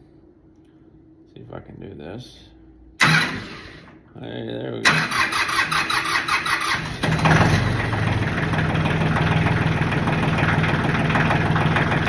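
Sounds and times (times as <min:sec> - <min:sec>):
tractor engine cranking and idling: 0:03.0 - 0:04.0, 0:04.8 - 0:12.0.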